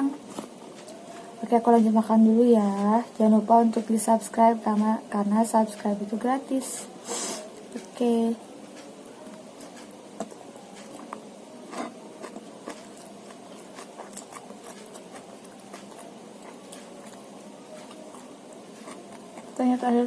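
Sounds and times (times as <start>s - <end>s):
faint steady hiss: 5.0s - 14.6s
person chewing food: 8.7s - 19.6s.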